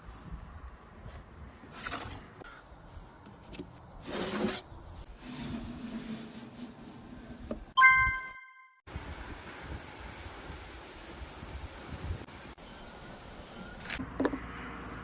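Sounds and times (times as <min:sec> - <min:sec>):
rubbing and scraping wood: 0:03.3 - 0:07.5.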